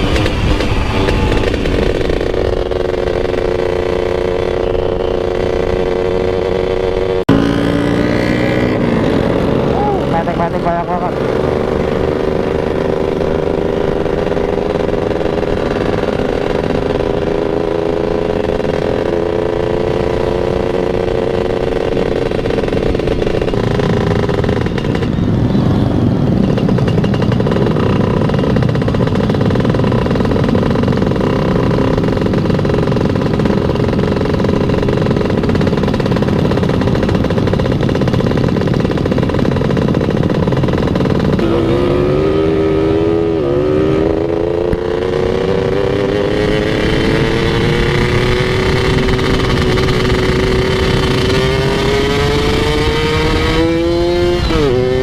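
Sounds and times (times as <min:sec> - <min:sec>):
rough rushing noise: 0:00.0 - 0:18.9
motorcycle engine running: 0:00.0 - 0:55.0.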